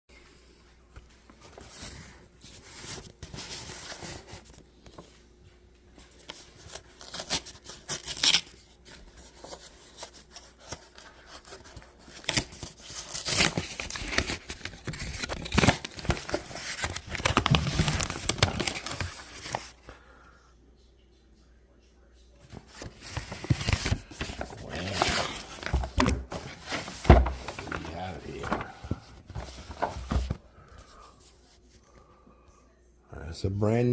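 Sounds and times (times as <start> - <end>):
packaging tearing and crinkling: 7.0 - 8.6, 12.0 - 19.7.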